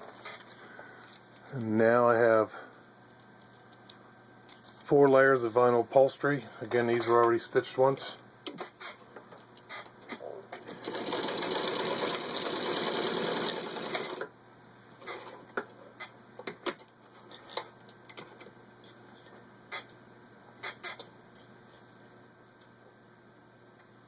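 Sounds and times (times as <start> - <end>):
sewing machine stitching: 10.6 - 14.3.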